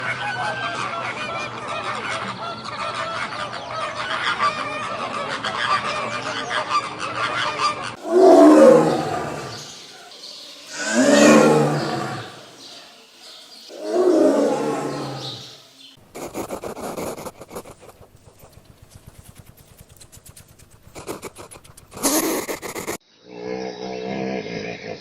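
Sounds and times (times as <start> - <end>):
chorus of honking birds: 0.0 - 8.0
large animal roaring: 8.0 - 9.8, 10.7 - 12.8, 13.7 - 15.6.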